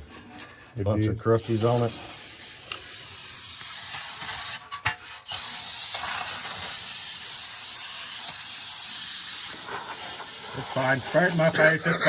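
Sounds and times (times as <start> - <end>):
aerosol spray hissing: 5.5 - 11.8.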